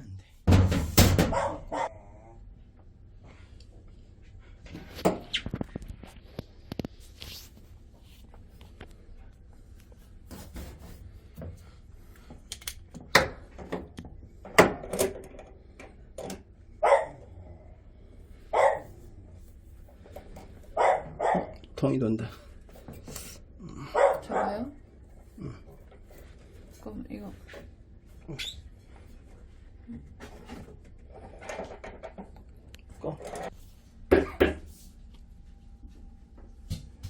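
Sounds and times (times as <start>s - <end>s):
dog barking: 1.3s - 2.0s, 16.8s - 17.3s, 18.5s - 19.0s, 20.8s - 21.6s, 23.8s - 24.7s.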